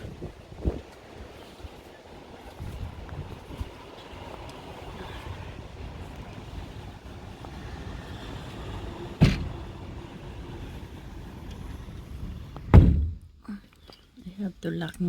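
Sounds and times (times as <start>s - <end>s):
strong gusting wind: 0.0s - 13.4s
loud sharp bang: 9.2s - 9.7s, 12.7s - 13.3s.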